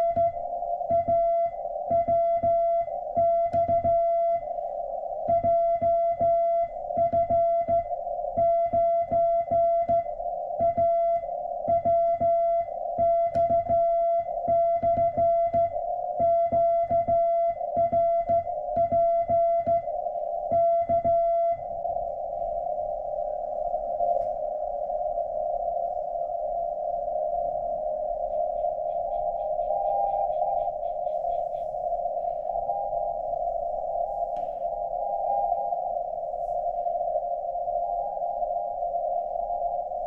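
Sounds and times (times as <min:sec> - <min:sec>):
morse code tone: 0:00.0 - 0:04.6, 0:05.3 - 0:21.8, 0:28.8 - 0:34.2.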